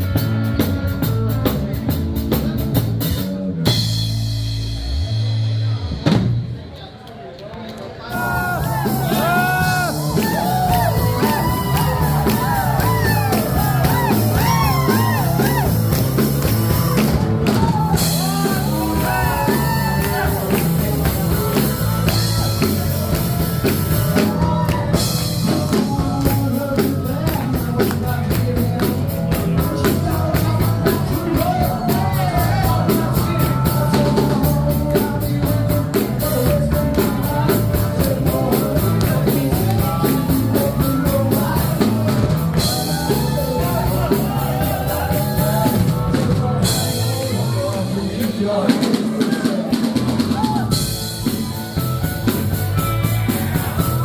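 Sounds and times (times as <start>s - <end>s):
steady drum beat: 0.0s - 6.6s, 8.1s - 54.0s
rock music with singing: 0.0s - 6.8s, 8.1s - 54.0s.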